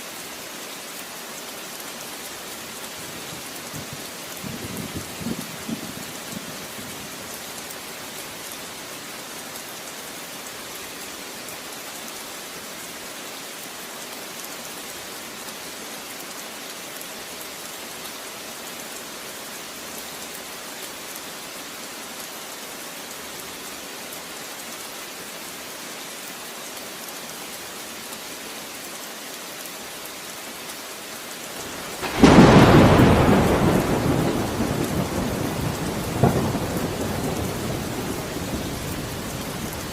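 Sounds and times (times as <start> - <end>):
steady rain falling: 0.0 - 39.9
thunder clap rumbling: 31.8 - 39.6.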